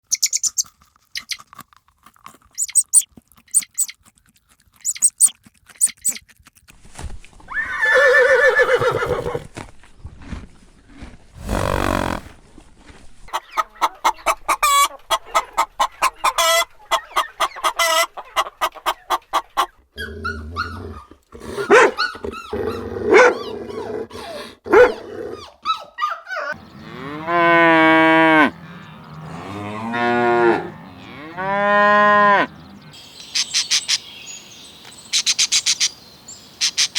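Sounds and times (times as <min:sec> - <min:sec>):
farm animal calls: 0:02.6 - 0:04.0, 0:04.8 - 0:06.2, 0:11.4 - 0:12.4, 0:13.3 - 0:34.1
cow mooing: 0:11.4 - 0:12.3, 0:26.7 - 0:32.6.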